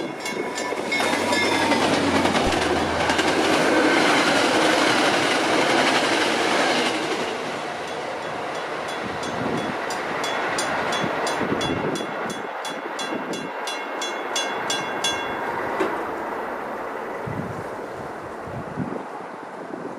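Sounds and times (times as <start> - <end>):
crossing bell ringing: 0.0 - 4.2, 7.8 - 16.2
train rumbling past: 0.0 - 19.6.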